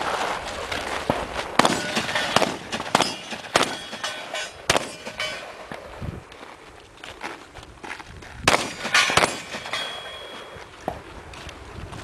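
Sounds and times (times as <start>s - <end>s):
loud gunshots: 1.6s - 5.2s, 8.5s - 9.9s.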